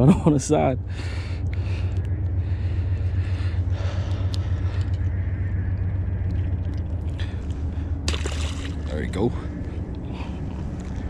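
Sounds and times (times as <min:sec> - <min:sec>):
low rumble: 0:00.0 - 0:11.0
faint clicks: 0:04.0 - 0:06.8
stream water flowing: 0:06.2 - 0:09.2.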